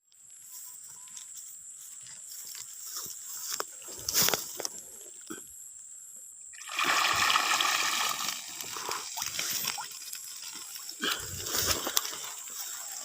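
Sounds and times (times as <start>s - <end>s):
water splashing and sloshing: 6.6s - 13.0s.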